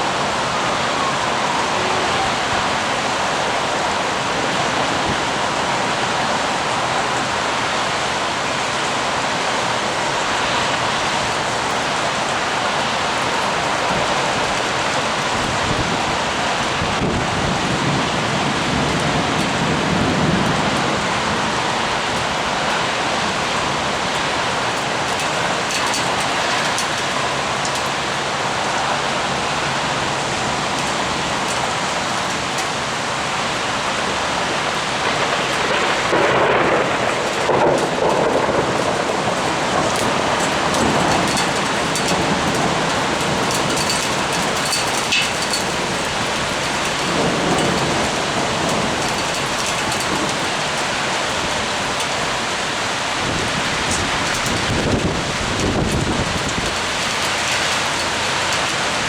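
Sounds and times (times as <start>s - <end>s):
heavy rain pouring: 0.0s - 59.0s
low rumble of thunder: 15.3s - 22.4s, 34.9s - 51.6s.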